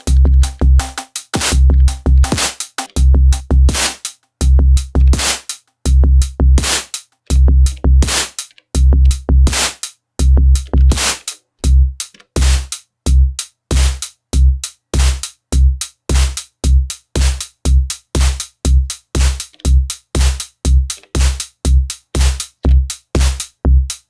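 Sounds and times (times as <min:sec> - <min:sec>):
bright hat and snare hits: 0:00.0 - 0:04.2, 0:05.2 - 0:05.6, 0:06.6 - 0:07.0, 0:08.0 - 0:08.6, 0:09.5 - 0:09.9, 0:10.9 - 0:11.4, 0:12.4 - 0:12.7, 0:13.7 - 0:14.1, 0:15.0 - 0:15.3, 0:16.1 - 0:16.4, 0:18.2 - 0:18.5, 0:19.2 - 0:19.6, 0:20.2 - 0:21.5, 0:22.2 - 0:22.5, 0:23.2 - 0:23.5
electronic drum pattern: 0:00.0 - 0:24.0
deep kick drum: 0:00.1 - 0:05.3, 0:05.9 - 0:08.2, 0:08.8 - 0:09.6, 0:10.2 - 0:24.0.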